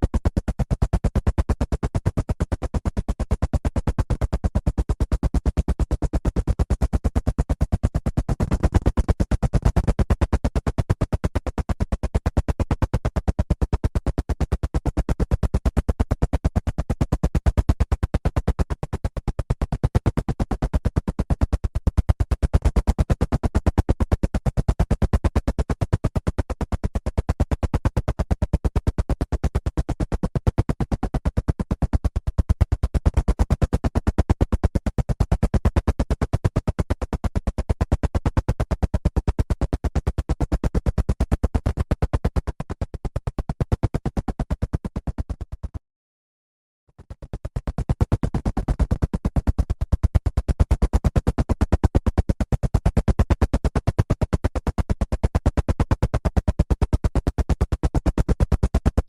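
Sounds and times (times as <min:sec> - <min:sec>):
helicopter engine noise: 0:00.1 - 0:12.7, 0:47.6 - 0:54.0
helicopter rotor chopping: 0:00.1 - 0:25.1, 0:27.2 - 0:29.9, 0:30.5 - 0:34.3, 0:38.1 - 0:42.1, 0:43.2 - 0:45.4, 0:47.2 - 0:59.0.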